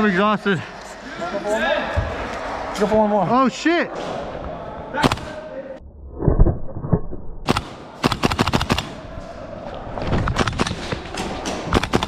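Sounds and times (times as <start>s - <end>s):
airsoft guns firing: 5.0s - 5.4s, 7.5s - 9.0s, 10.4s - 12.0s.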